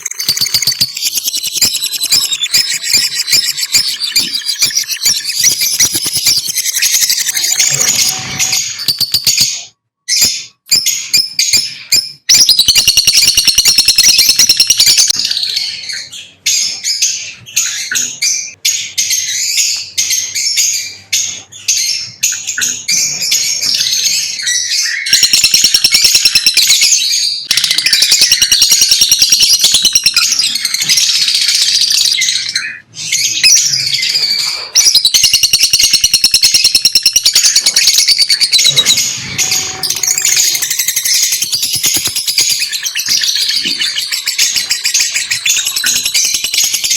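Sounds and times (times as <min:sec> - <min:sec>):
lovebirds chirping: 0:00.0 - 0:46.9.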